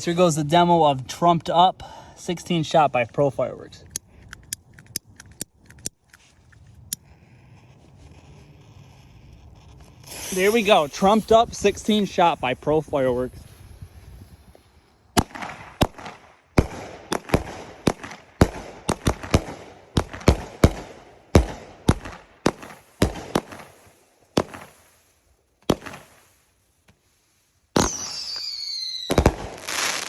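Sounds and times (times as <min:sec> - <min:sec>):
fireworks bangs: 0:10.0 - 0:25.1, 0:25.7 - 0:26.4, 0:27.8 - 0:30.0.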